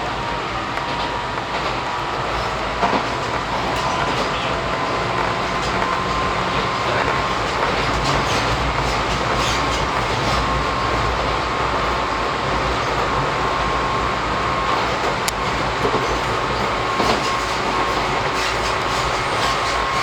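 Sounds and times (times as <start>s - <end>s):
train wheels rumbling on rail: 0.0s - 20.0s
wheels clicking over rail joints: 0.0s - 20.0s.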